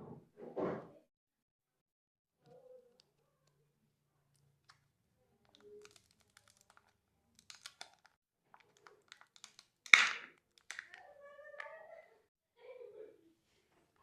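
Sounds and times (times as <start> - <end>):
plastic wrappers crinkling: 5.4 - 11.2.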